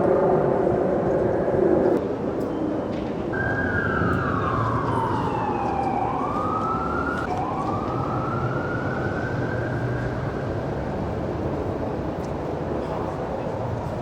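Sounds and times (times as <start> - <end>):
low street rumble: 0.0 - 14.0
emergency vehicle siren wailing: 3.3 - 11.2.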